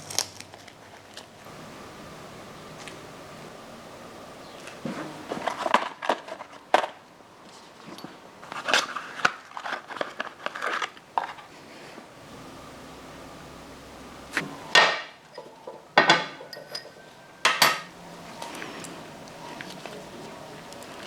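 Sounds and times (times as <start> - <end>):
parts clicking and knocking: 14.4 - 21.0.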